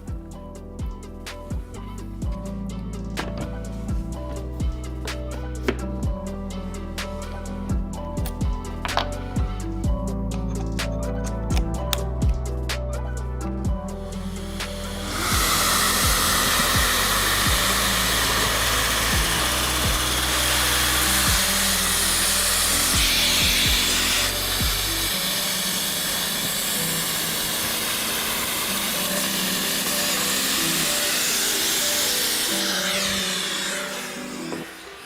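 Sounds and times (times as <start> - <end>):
background music: 0.0 - 35.0
dust extractor running: 13.8 - 35.0
drill boring a hole: 14.0 - 35.0.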